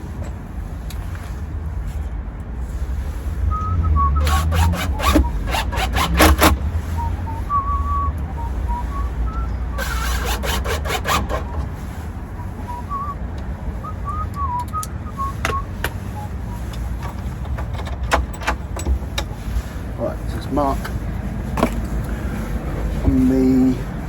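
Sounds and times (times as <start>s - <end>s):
faint wavering whistle-like tone: 7.0s - 10.0s.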